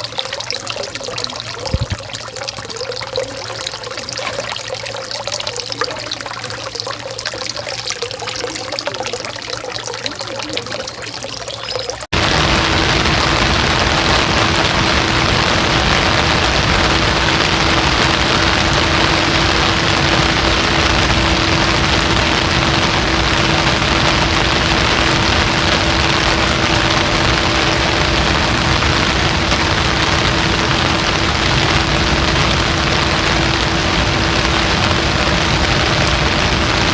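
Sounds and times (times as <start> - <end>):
faint steady hum: 0.0 - 36.9
rushing water: 0.0 - 36.9.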